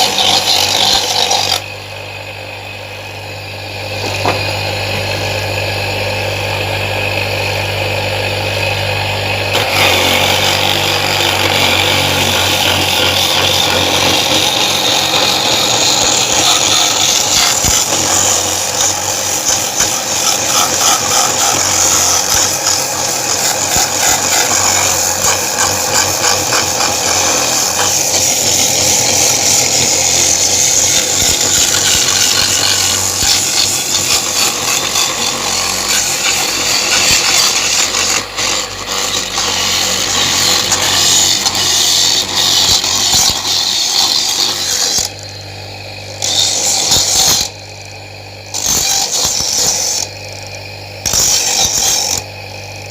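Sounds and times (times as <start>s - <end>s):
coconut rasping on grater: 0.0s - 1.7s, 9.5s - 45.4s, 48.5s - 50.2s
electric grater motor humming: 0.0s - 52.9s.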